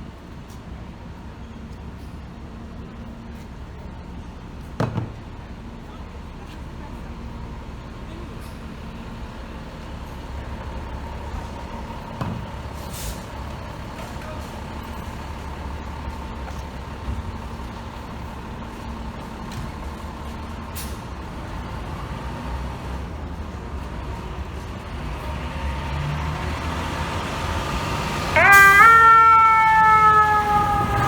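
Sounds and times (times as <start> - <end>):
diesel truck engine rumbling: 0.0 - 31.0
air brake hisses: 12.8 - 13.3.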